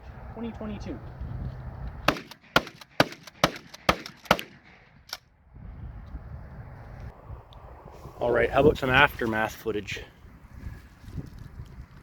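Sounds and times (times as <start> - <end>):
sharp gunshots: 2.0 - 5.2.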